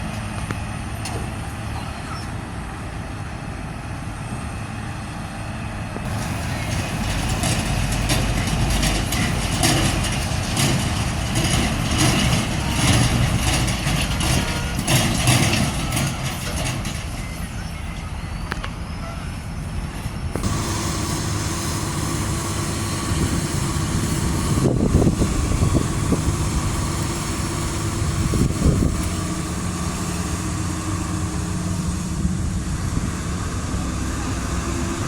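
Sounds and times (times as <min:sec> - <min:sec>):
diesel truck engine running: 0:00.0 - 0:35.0
knocks and rattles: 0:06.1 - 0:17.3.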